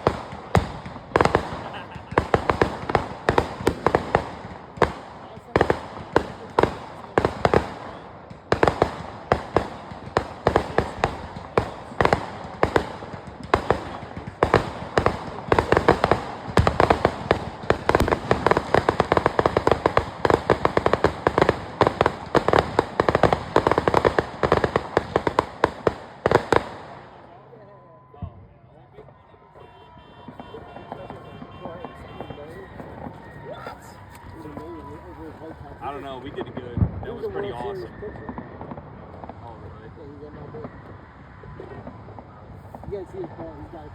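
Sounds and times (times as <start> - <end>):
fireworks bangs and crackles: 0.0 - 43.9.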